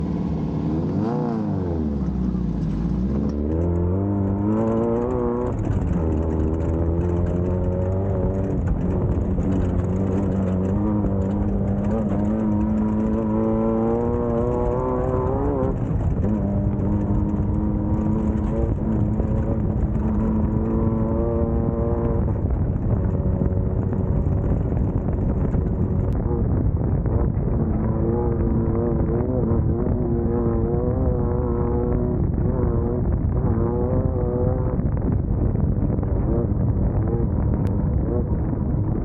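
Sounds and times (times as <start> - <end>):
race car engine revving: 0.0 - 35.1.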